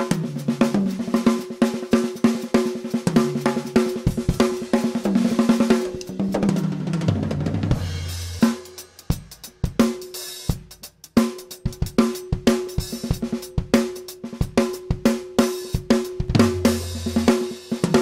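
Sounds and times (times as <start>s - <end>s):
ringing snare drum: 0.0s - 18.0s
drum fill: 3.0s - 10.8s.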